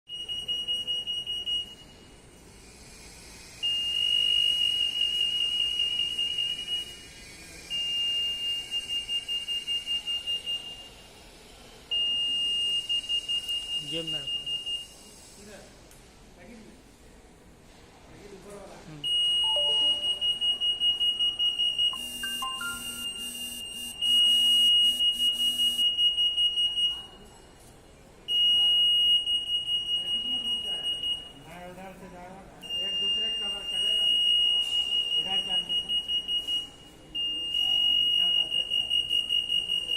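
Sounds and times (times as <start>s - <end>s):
shrill security gate alarm tone: 0.1s - 2.4s, 3.6s - 11.0s, 12.0s - 15.0s, 19.1s - 27.1s, 28.3s - 31.5s, 32.7s - 39.9s
high-pitched gate alarm tone: 19.2s - 21.2s, 21.9s - 25.8s.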